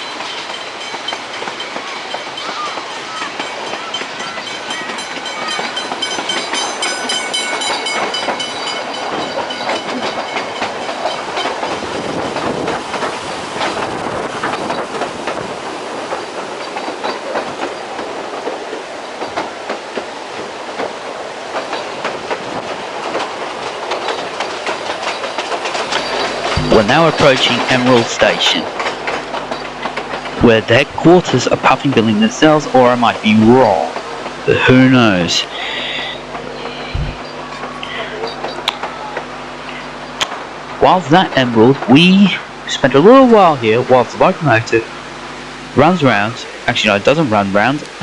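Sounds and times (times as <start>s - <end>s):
high wheel squeal: 0.0s - 11.6s
steam train rolling: 0.0s - 48.0s
wheels clicking over rail joints: 0.0s - 48.0s.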